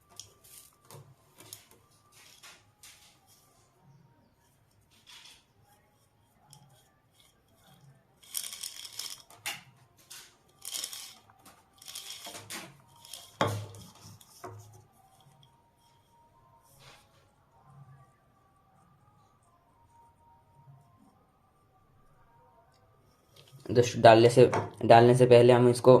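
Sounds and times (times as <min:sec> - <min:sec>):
scraping and rustling of parts: 0:00.0 - 0:03.6, 0:04.7 - 0:17.2.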